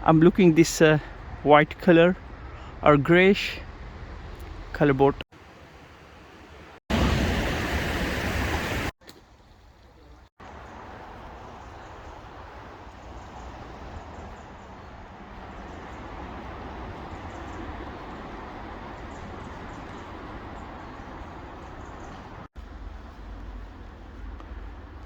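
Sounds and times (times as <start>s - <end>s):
outdoor rushing hiss: 6.9s - 9.0s.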